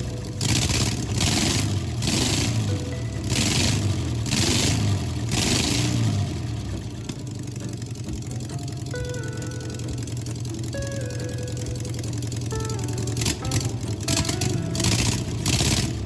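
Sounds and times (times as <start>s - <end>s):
background music with steady beat: 0.0s - 16.0s
van engine running: 0.0s - 16.0s.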